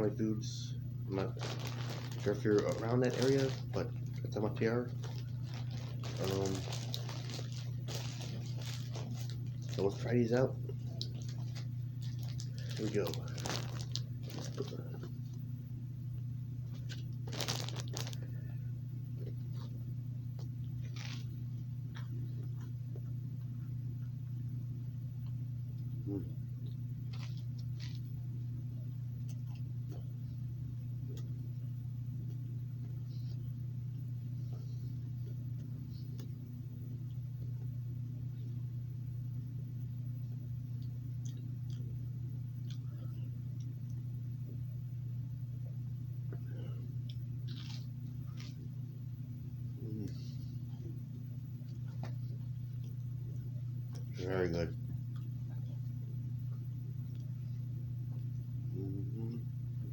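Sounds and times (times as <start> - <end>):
steady low hum: 0.0 - 59.9
plastic bag crinkling: 1.1 - 10.4, 11.0 - 15.0, 16.7 - 18.3, 20.8 - 21.3, 47.4 - 48.5
person chewing bread: 1.3 - 4.3, 4.9 - 10.0, 10.6 - 15.3, 16.6 - 18.4, 19.2 - 24.1, 25.2 - 28.2, 28.8 - 31.4, 40.5 - 44.6, 45.6 - 54.1, 54.8 - 59.9.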